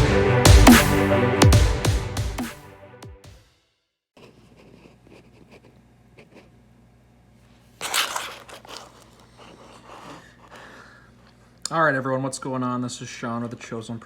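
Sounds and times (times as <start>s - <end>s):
rustling and crinkling: 7.4s - 10.1s.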